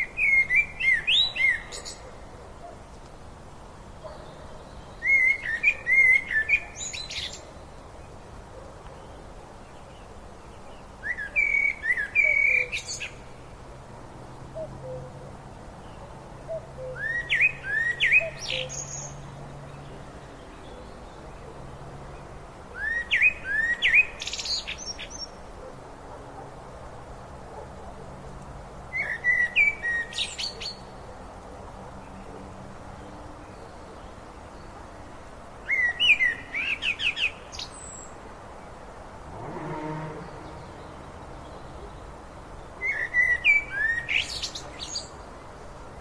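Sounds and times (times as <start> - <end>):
songbird chirping and whistling: 42.8 - 44.6.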